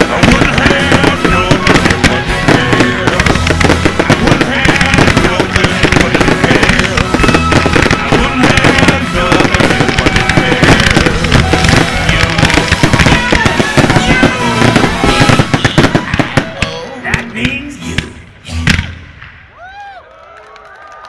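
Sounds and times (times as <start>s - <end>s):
loud music: 0.0s - 16.6s
fireworks bangs: 0.0s - 19.8s.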